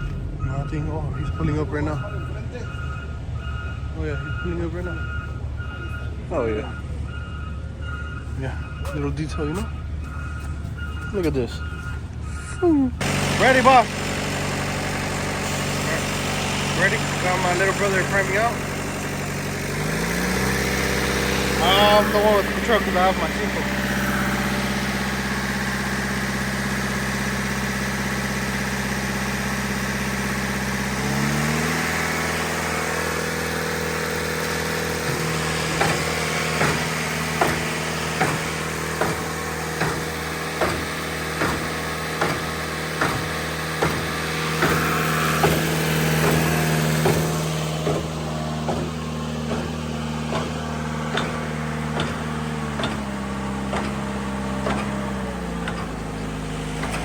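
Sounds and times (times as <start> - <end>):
pump engine running: 8.9 - 57.0
pump stroking with regular clunk: 13.0 - 57.0.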